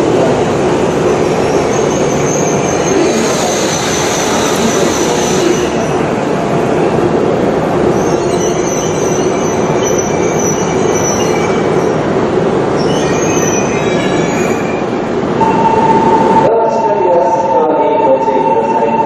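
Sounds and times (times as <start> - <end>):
train rail rumble: 0.0 - 16.4
wheel squeal: 1.4 - 6.0, 8.0 - 11.7, 12.8 - 14.9.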